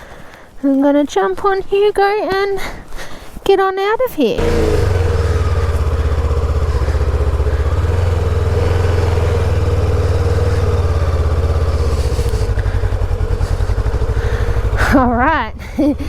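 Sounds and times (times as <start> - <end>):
motorcycle engine idling: 4.4 - 16.0.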